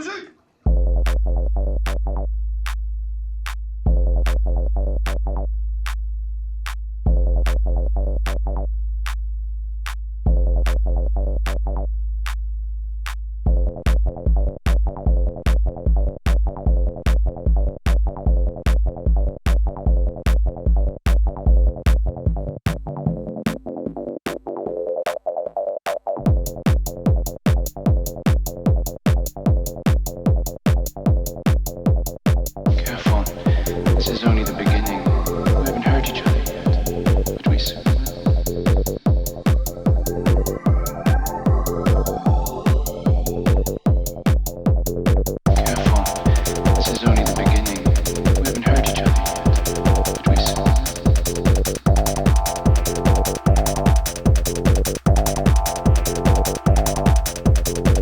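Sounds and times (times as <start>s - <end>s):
low bass notes: 0.6s - 24.2s, 26.2s - 58.0s
four-on-the-floor kick drum: 0.7s - 6.1s, 6.7s - 23.6s, 26.3s - 58.0s
ticking hi-hats: 26.4s - 58.0s
rising filter sweep: 32.7s - 44.2s, 45.5s - 58.0s
acid electronic music: 32.7s - 58.0s.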